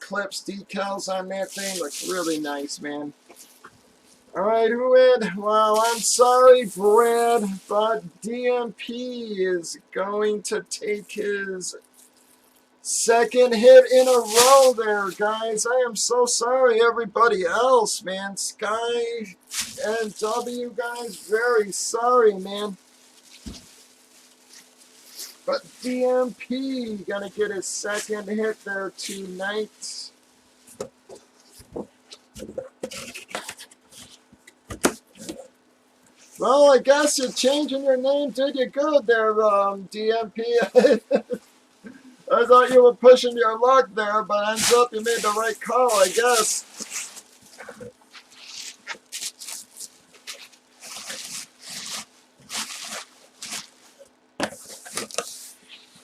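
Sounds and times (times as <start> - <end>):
faint steady hum: 0.0 - 56.0
rustling and handling noises: 1.4 - 4.4, 5.8 - 8.2, 11.1 - 15.4, 19.3 - 37.7, 44.5 - 56.0.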